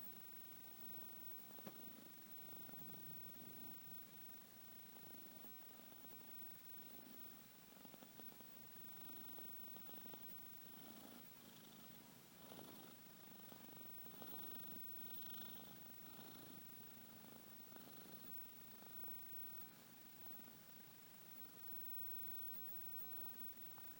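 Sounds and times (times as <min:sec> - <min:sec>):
cat snoring: 0:00.9 - 0:03.8, 0:04.9 - 0:19.0.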